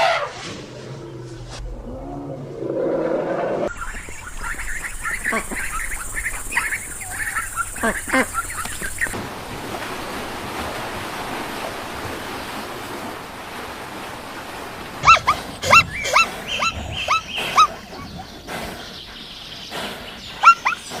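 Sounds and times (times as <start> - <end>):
high animal yelps: 15.0 - 17.7, 20.4 - 20.8.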